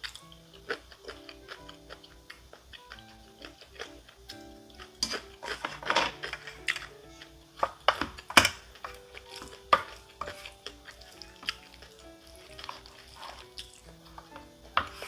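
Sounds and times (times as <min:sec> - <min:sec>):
background music with steady beat: 0:00.0 - 0:15.0
eating sounds: 0:00.0 - 0:15.0.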